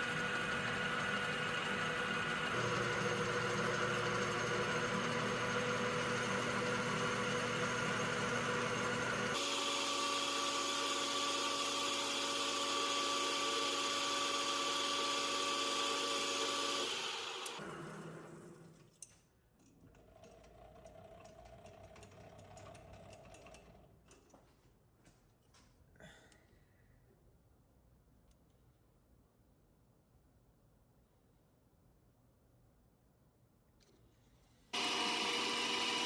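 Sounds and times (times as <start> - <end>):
metal lathe running: 0.0 - 18.3, 34.8 - 36.0.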